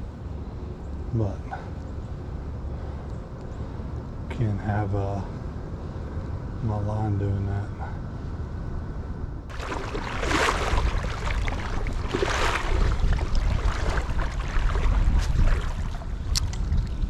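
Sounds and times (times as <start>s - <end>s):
low rumble: 5.2s - 17.0s
creek water splashing: 9.5s - 17.0s.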